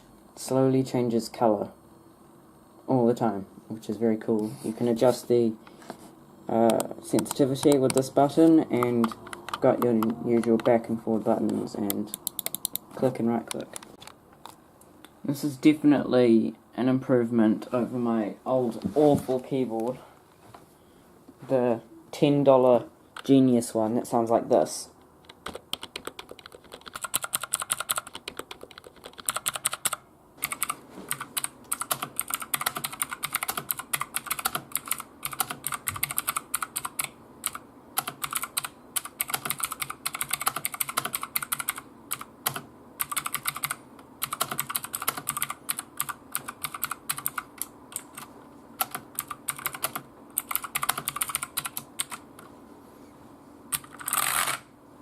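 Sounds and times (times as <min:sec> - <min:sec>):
keyboard typing: 0:08.8 - 0:10.8, 0:11.4 - 0:12.9, 0:25.2 - 0:52.3, 0:53.7 - 0:54.6.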